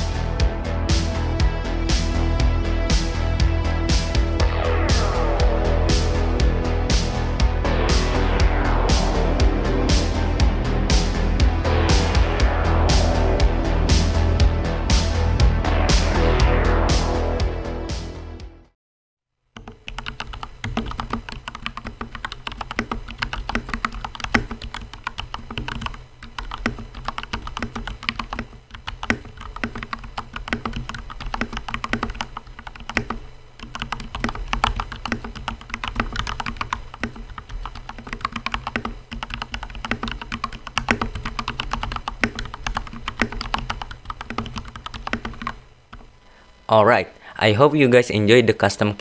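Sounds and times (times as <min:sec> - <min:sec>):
fast mechanical keyboard typing: 0:19.6 - 0:46.1.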